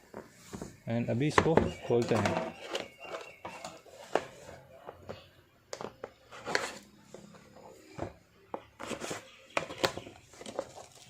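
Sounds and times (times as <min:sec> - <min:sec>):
packaging knocks and scrapes: 0:05.8 - 0:07.3, 0:07.9 - 0:11.0.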